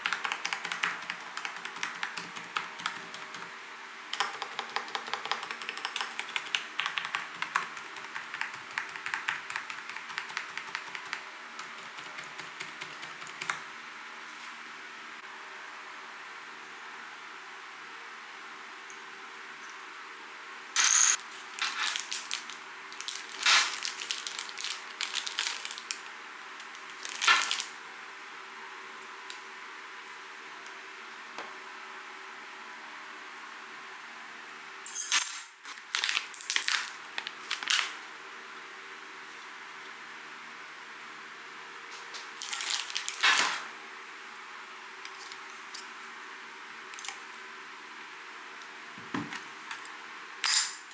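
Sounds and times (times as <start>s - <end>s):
keyboard typing: 0.0s - 3.5s, 4.2s - 13.6s, 20.8s - 21.2s.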